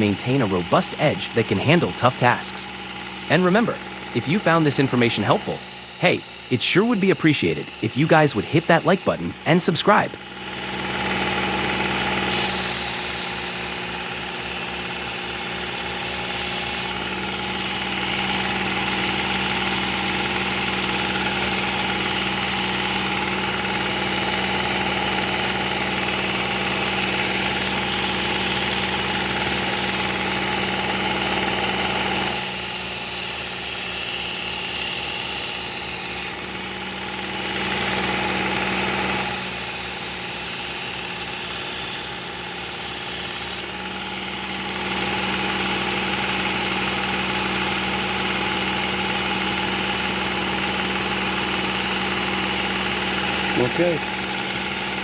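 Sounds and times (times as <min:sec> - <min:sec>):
belt sharpener grinding knife: 0:05.4 - 0:09.0, 0:12.2 - 0:16.9, 0:32.2 - 0:36.4, 0:39.1 - 0:43.6.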